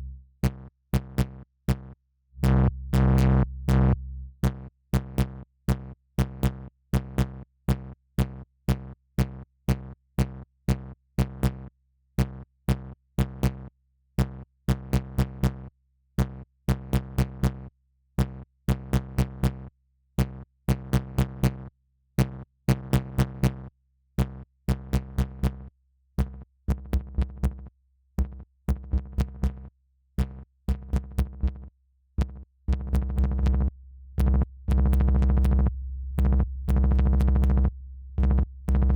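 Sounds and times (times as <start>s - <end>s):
sustained low bass tone: 0.0s - 0.3s, 2.4s - 4.5s, 32.7s - 38.9s.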